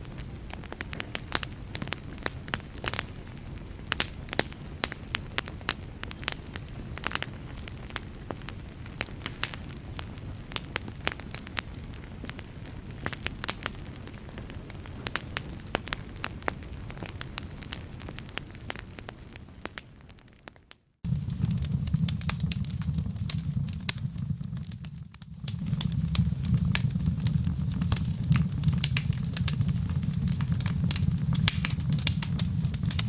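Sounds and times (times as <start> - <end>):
wood fire crackling: 0.0 - 33.0
low rumble: 21.1 - 33.0.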